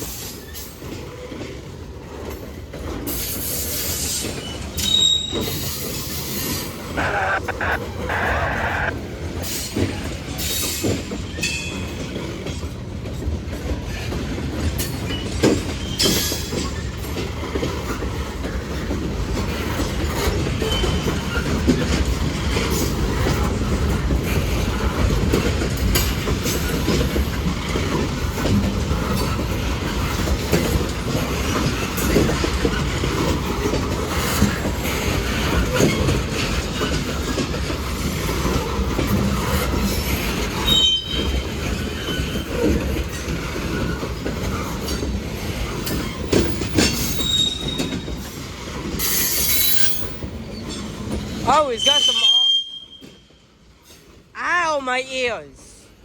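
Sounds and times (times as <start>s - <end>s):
steel wheels rumbling on rail: 9.2s - 51.4s
high wheel squeals: 46.1s - 48.2s, 51.5s - 53.2s.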